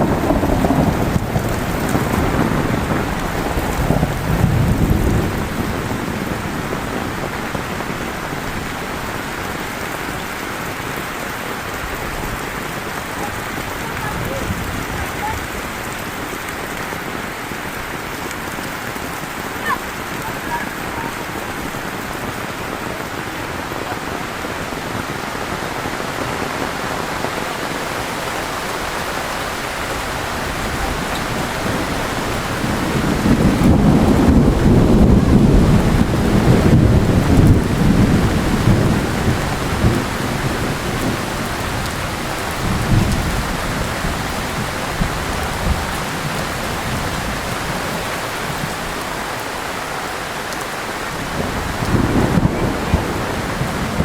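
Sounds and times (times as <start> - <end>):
low thunder rumble: 0.0 - 9.9, 26.7 - 48.8, 51.2 - 54.0
heavy rain hissing: 0.0 - 54.0.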